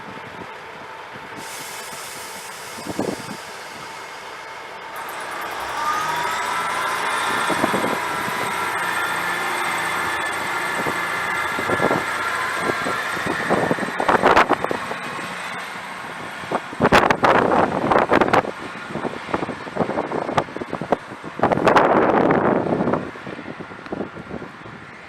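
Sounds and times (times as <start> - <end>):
electric train motor whine: 1.4 - 20.0.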